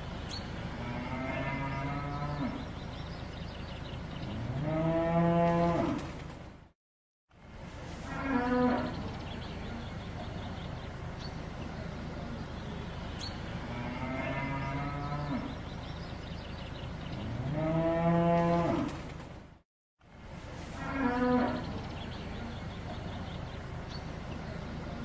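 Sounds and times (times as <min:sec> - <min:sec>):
cattle mooing: 0:00.8 - 0:02.7, 0:13.6 - 0:15.6.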